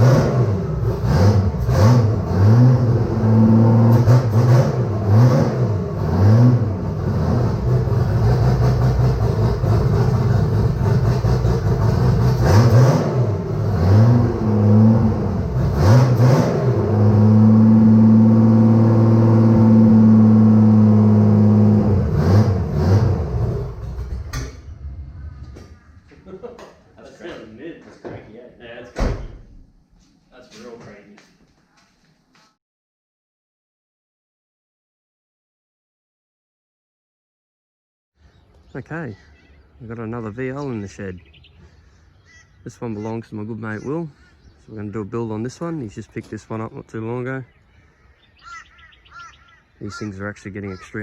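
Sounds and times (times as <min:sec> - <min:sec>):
car engine revving: 0:00.0 - 0:25.9.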